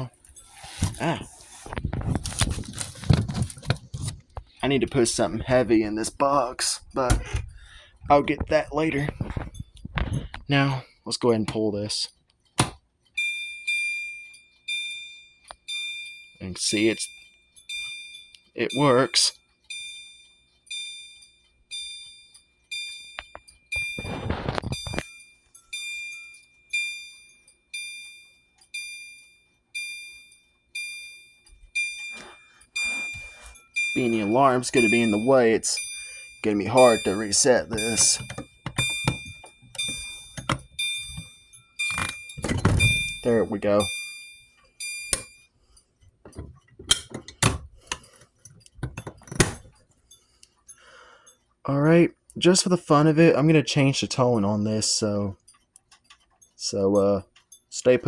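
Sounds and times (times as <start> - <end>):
handling clicks and knocks: 0.0 - 10.5, 12.5 - 12.8, 36.4 - 43.9, 46.1 - 49.9
electronic alarm chime: 13.2 - 45.6
fire alarm horn: 31.8 - 38.2.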